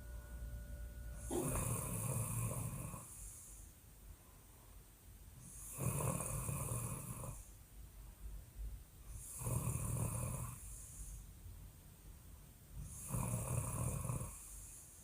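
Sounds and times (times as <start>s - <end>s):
woman snoring loudly: 1.1s - 3.2s, 5.6s - 7.4s, 9.2s - 10.7s, 12.9s - 14.5s.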